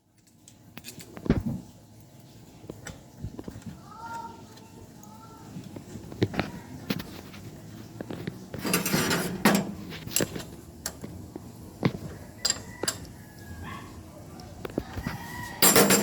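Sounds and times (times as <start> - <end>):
hard objects clicking and knocking: 8.0 - 11.2, 11.8 - 13.2, 15.6 - 16.0.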